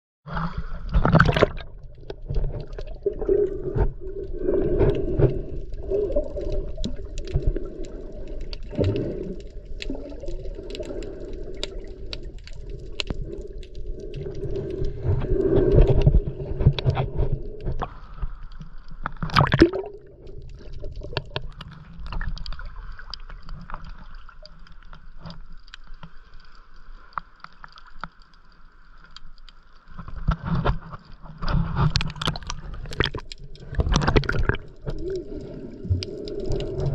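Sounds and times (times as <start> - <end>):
underwater gurgling: 0.3 - 26.2, 29.9 - 36.9
sharp underwater clicks: 31.4 - 36.9.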